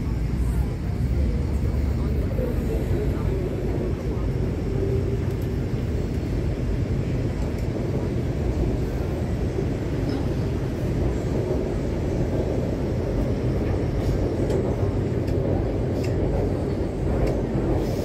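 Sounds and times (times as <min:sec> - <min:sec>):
train wheels rumbling: 0:00.0 - 0:18.0
faint clicks: 0:16.0 - 0:16.3.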